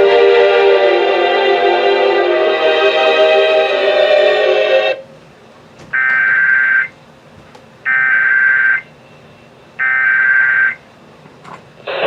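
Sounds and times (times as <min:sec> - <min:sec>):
music: 0:00.0 - 0:05.0
shrill digital data tones: 0:06.0 - 0:07.0, 0:07.9 - 0:08.9.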